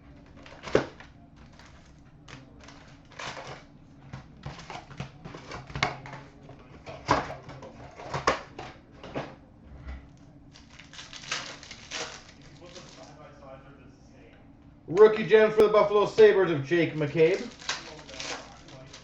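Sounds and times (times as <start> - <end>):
cardboard and wrapper rustling: 10.5 - 13.1, 17.2 - 19.0.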